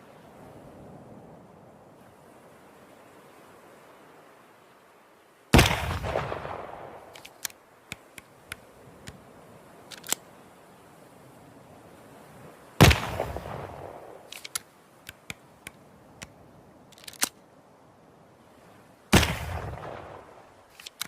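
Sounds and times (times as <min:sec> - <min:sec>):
pistol shots with echo: 0:05.6 - 0:07.1, 0:12.8 - 0:14.2, 0:19.1 - 0:20.2
light clicks: 0:07.1 - 0:09.2, 0:09.8 - 0:10.3, 0:14.3 - 0:17.4, 0:20.7 - 0:21.0.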